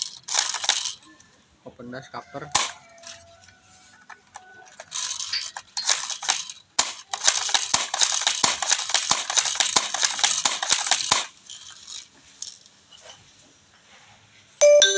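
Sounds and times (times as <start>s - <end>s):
airsoft rifle clicking and clattering: 0.0s - 1.1s, 2.5s - 3.3s, 4.0s - 12.8s.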